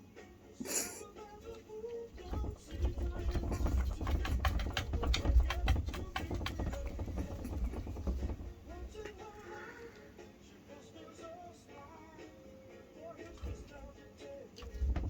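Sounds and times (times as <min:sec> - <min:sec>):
knocks and scuffs on door: 0:02.2 - 0:09.3.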